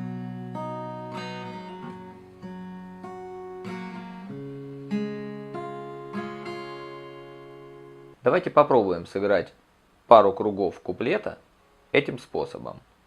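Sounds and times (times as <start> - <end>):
acoustic guitar fingerpicking: 0.0 - 8.2.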